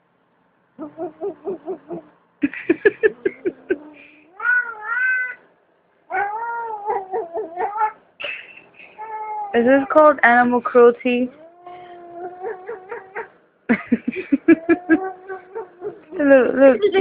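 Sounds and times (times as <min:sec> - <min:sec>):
cat yowling and meowing: 0:03.7 - 0:05.4, 0:06.1 - 0:08.0, 0:09.0 - 0:10.0, 0:11.4 - 0:13.3, 0:14.5 - 0:16.2.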